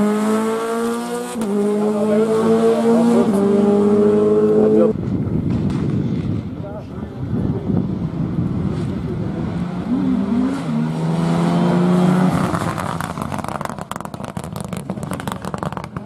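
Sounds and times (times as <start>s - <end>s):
rally car accelerating past: 0.0s - 5.0s, 8.0s - 16.0s
engine crackling: 12.2s - 16.0s.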